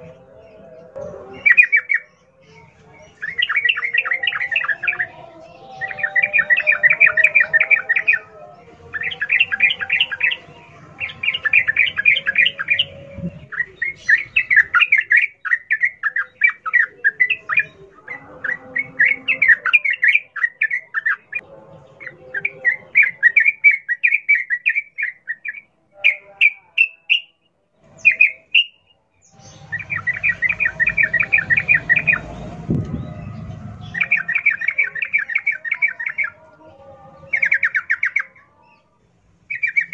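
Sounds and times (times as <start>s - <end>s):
bulbul chattering song: 0.0s - 39.9s.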